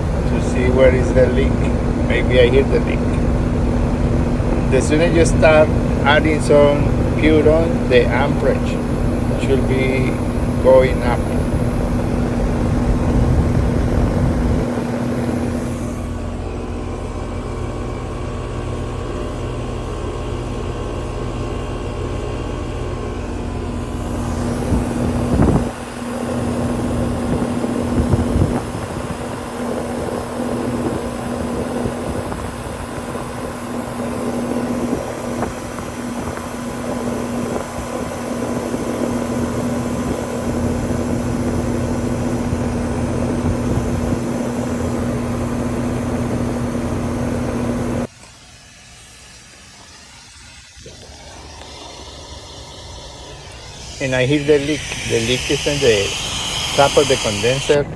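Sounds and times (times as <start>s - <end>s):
air conditioner compressor hum: 0.0s - 57.9s.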